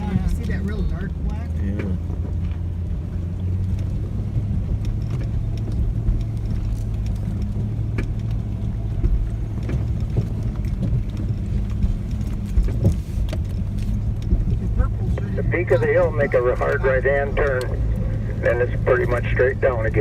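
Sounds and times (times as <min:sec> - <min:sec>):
off-road vehicle engine running: 0:00.0 - 0:20.0
vehicle knocks and rattles: 0:00.0 - 0:20.0.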